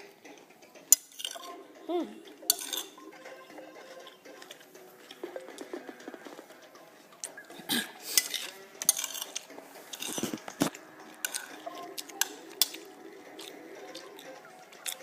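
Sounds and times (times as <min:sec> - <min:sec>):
hard objects clattering: 0:02.2 - 0:06.7, 0:08.1 - 0:15.0.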